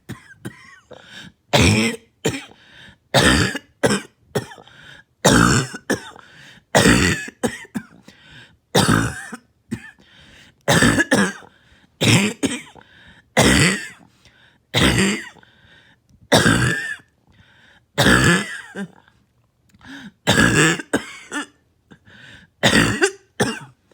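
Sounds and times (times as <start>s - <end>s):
person coughing hard: 0.0s - 8.0s, 8.8s - 10.0s, 10.7s - 14.1s, 14.8s - 15.4s, 16.3s - 17.1s, 18.0s - 19.0s, 19.9s - 21.6s, 22.6s - 23.8s.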